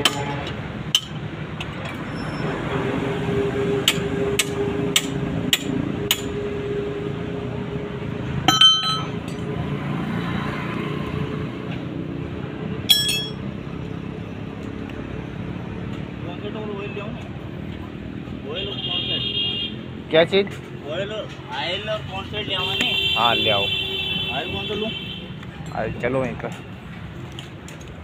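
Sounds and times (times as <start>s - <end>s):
ringing metallic clinks: 8.5s - 9.2s, 12.9s - 13.4s.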